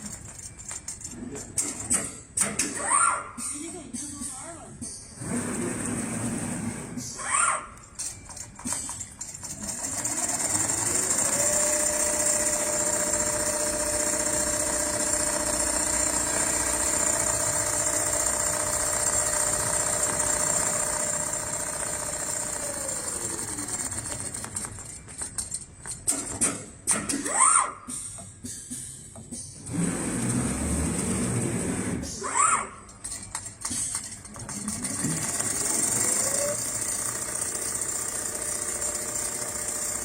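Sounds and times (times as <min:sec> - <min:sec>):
sewing machine running: 0:08.2 - 0:25.0, 0:33.4 - 0:40.0.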